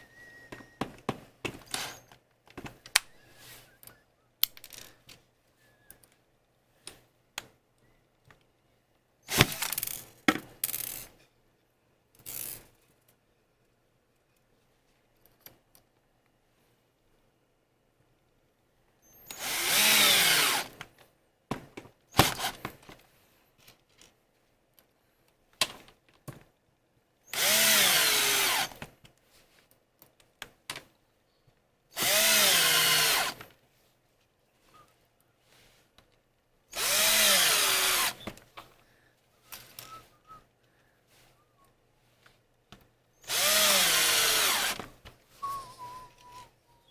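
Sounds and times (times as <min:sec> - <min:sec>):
electric drill driving screws: 0:01.7 - 0:02.1, 0:19.3 - 0:20.8, 0:22.2 - 0:22.6, 0:27.3 - 0:28.8, 0:32.0 - 0:33.5, 0:36.7 - 0:38.3, 0:43.2 - 0:44.9.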